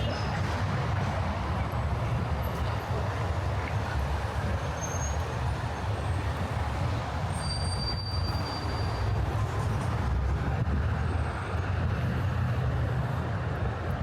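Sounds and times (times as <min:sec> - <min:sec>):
city traffic rumble: 0:00.0 - 0:14.0.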